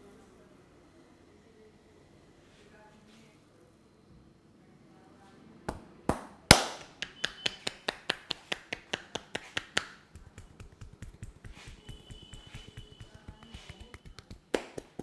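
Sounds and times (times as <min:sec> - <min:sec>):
hands slapping on head: 0:05.7 - 0:15.0
light quick patting: 0:05.7 - 0:15.0.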